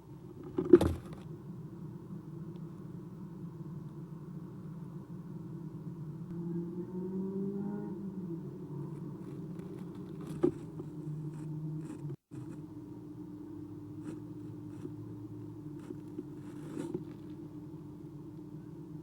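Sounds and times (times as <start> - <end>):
steady low hum: 0.0 - 19.0
faint scratches and clicks: 8.9 - 12.7, 14.0 - 17.4.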